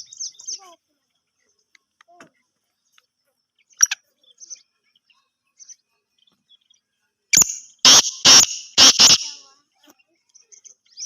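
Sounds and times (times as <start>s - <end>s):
faint chirps: 0.0s - 11.0s
loud harsh bird call: 7.3s - 9.5s
bird sharp note: 7.4s - 9.4s.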